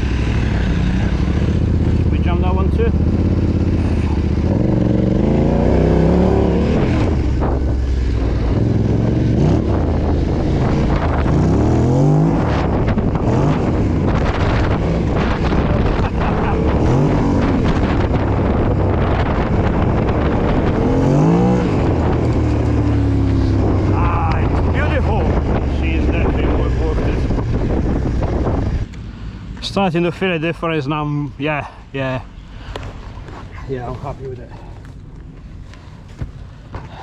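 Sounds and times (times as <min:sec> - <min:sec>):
motorcycle engine revving: 0:00.0 - 0:29.0
wind buffeting microphone: 0:00.0 - 0:29.1.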